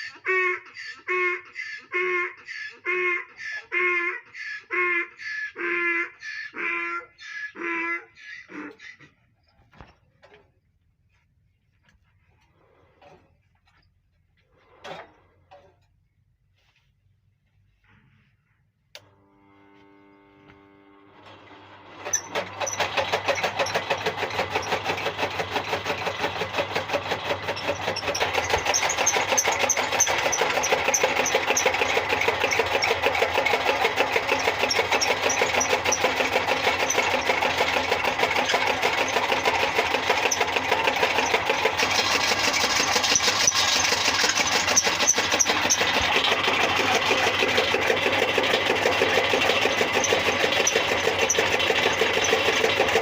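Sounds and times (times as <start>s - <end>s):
chaff cutter mechanical clatter: 21.2s - 53.0s.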